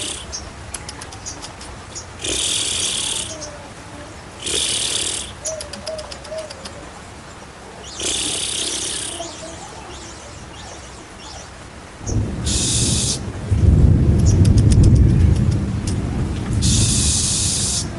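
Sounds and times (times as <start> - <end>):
bird hissing rasps: 0.0 - 0.4, 2.2 - 3.6, 4.4 - 6.7, 7.8 - 10.2, 12.4 - 13.2, 16.6 - 17.9
bird clicking chatter: 0.0 - 3.4, 4.4 - 6.8, 8.0 - 9.2, 14.2 - 16.0
faint cooing: 2.2 - 7.0, 7.7 - 10.8.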